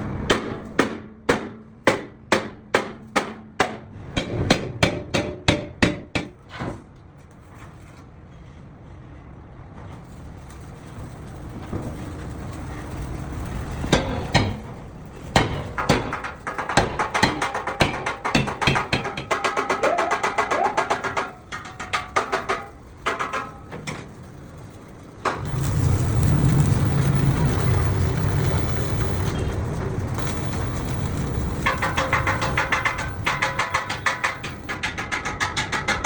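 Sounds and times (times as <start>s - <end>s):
quiet steady noise: 8.3s - 35.7s.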